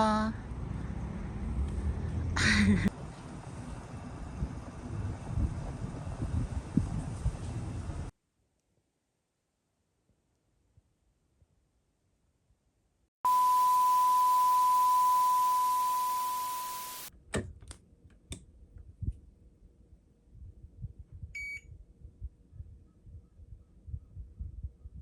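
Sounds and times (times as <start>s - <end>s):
short higher beep: 13.3s - 17.1s
steady electronic beep: 13.3s - 17.1s.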